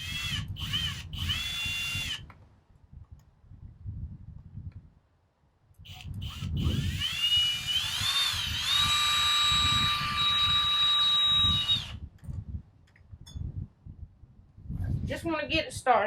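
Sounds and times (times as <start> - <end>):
power drill motor whine: 0.0 - 2.2, 5.9 - 12.1.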